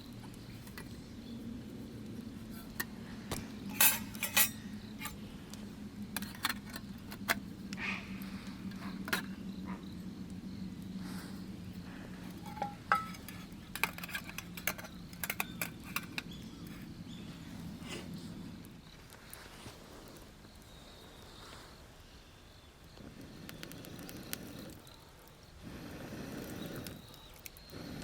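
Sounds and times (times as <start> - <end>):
steady low hum: 0.0 - 28.0
metal cookware clinking: 3.6 - 5.2, 12.4 - 16.3.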